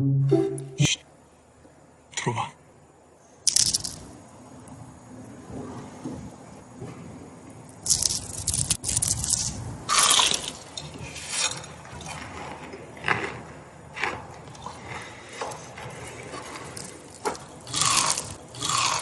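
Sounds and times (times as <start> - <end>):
crisp food crunching: 3.5 - 4.1, 7.8 - 12.3, 16.0 - 19.0.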